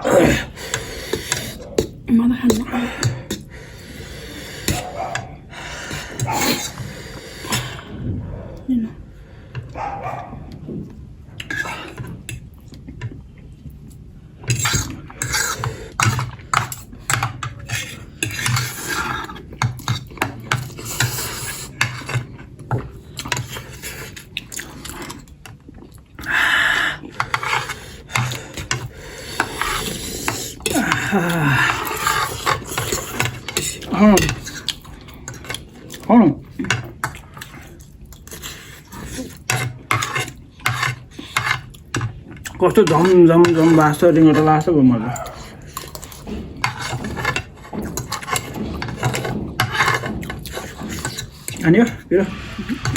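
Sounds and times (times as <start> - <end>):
eating noise: 0.0 - 8.7, 14.5 - 52.9
cutlery clinking on plates: 42.7 - 52.0.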